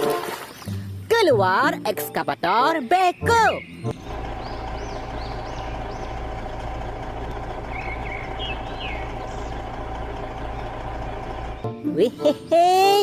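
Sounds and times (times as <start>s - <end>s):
birds chirping: 0.2s - 13.0s
excavator engine idling: 3.9s - 11.7s.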